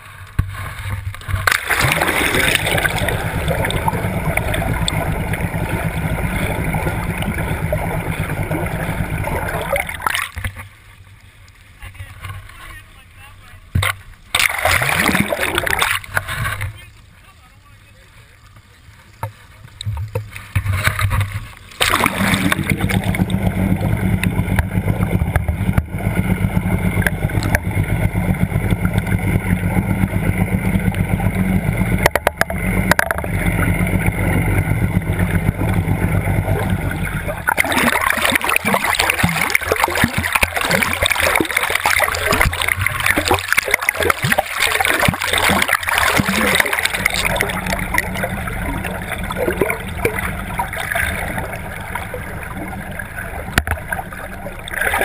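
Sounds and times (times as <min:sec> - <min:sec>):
choppy gurgling water: 0:00.0 - 0:55.0
motorboat engine running: 0:00.0 - 0:55.0
rushing water: 0:00.0 - 0:55.0.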